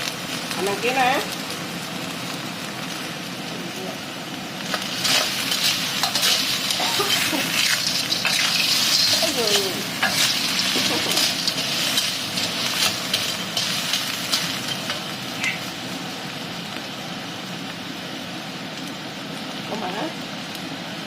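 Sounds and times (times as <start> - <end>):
food sizzling in a pan: 0.0 - 21.0
stirring clicks and scrapes: 4.7 - 15.6.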